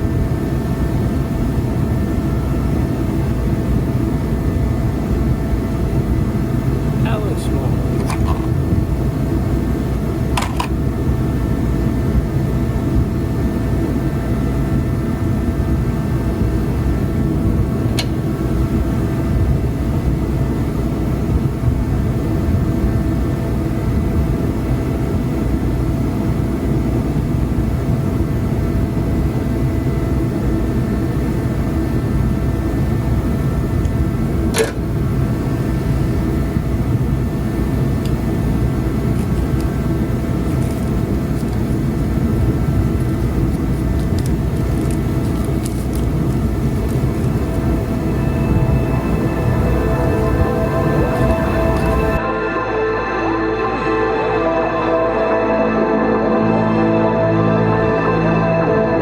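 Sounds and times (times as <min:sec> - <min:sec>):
constant hum: 0:00.0 - 0:59.0
mechanical drone: 0:42.1 - 0:59.0.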